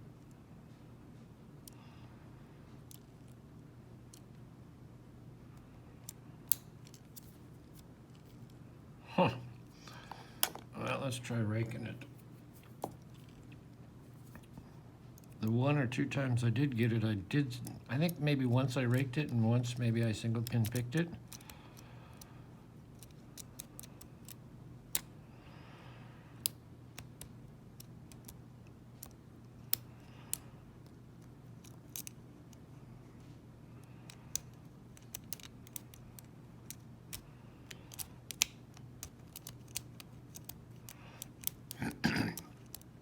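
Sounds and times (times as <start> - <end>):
lock pick clicking: 31.6 - 32.2, 33.8 - 41.8.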